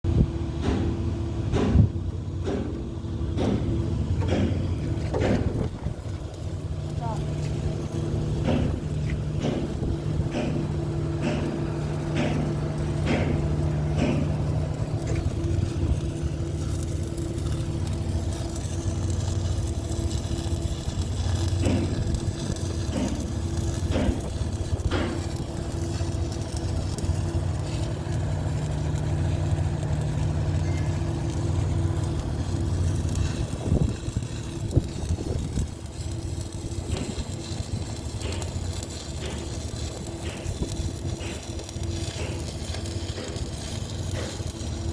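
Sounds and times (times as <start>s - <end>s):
machine hum: 0.1s - 44.9s
sharp knocks: 3.4s - 5.7s.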